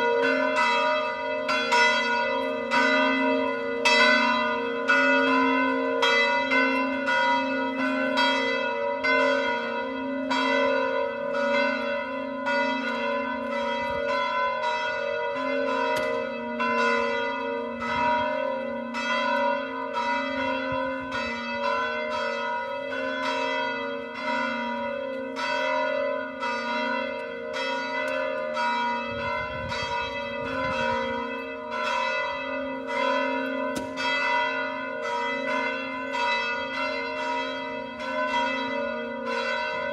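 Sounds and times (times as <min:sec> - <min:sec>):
bells ringing: 0:00.0 - 0:39.9.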